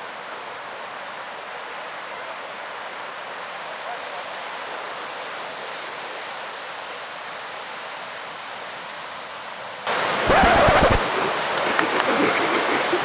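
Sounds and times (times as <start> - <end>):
faint voices: 9.9 - 13.0
sea surf: 9.9 - 13.0.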